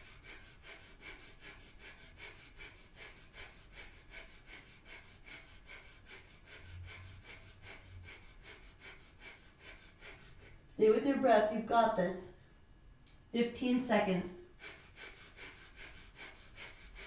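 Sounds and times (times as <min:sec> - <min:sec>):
forceful breaths through nose: 0:00.0 - 0:10.7, 0:14.5 - 0:17.0.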